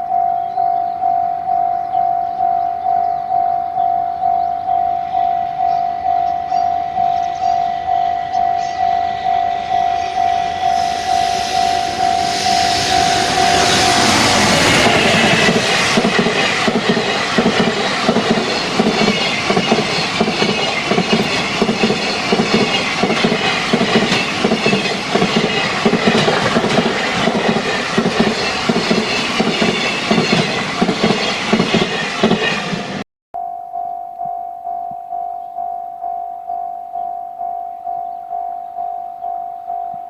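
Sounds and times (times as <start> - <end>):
faint high wheel squeal: 7.2 - 16.0
train wheels clattering over rail joints: 13.5 - 33.0.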